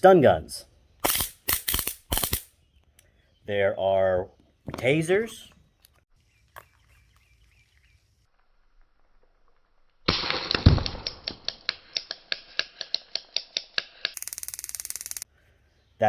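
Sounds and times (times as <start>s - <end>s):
stun device clicking and crackling: 1.0s - 2.5s, 10.0s - 15.3s.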